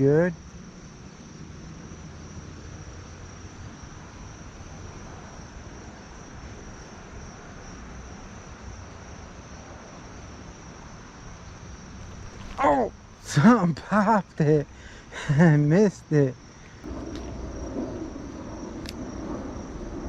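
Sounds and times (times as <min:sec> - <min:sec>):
crickets chirping: 0:00.0 - 0:20.0
low rumble: 0:16.8 - 0:20.0.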